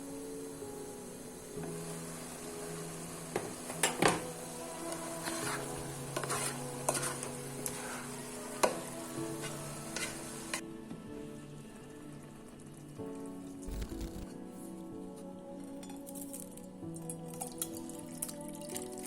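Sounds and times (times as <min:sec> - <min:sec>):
soft background music: 0:00.0 - 0:19.0
clinks and scrapes: 0:06.2 - 0:07.8.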